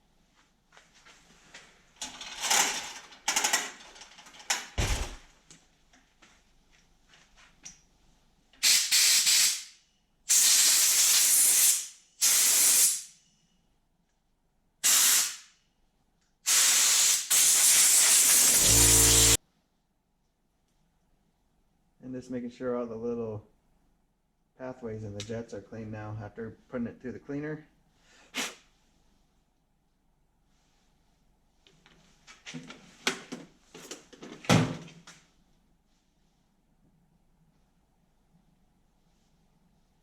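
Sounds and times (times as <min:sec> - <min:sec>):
spray hissing in bursts: 0:14.8 - 0:15.4, 0:16.5 - 0:19.4.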